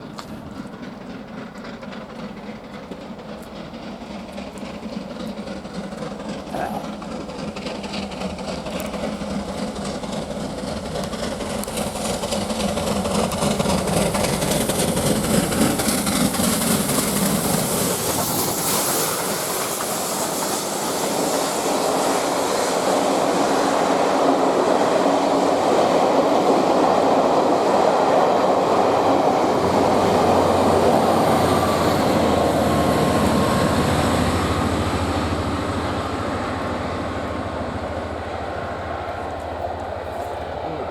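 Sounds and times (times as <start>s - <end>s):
carriages running on rails: 0.0s - 40.9s
steam locomotive passing: 0.0s - 40.9s.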